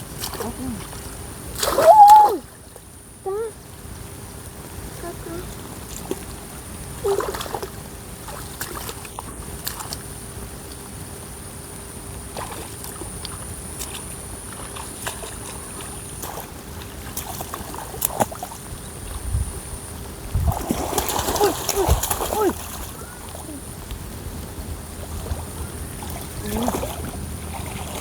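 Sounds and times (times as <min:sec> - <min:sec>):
small splashes and knocks: 0:00.0 - 0:02.9, 0:05.1 - 0:10.1, 0:12.3 - 0:19.3, 0:20.3 - 0:28.0
water sloshing around wading people: 0:00.0 - 0:11.2, 0:11.8 - 0:28.0.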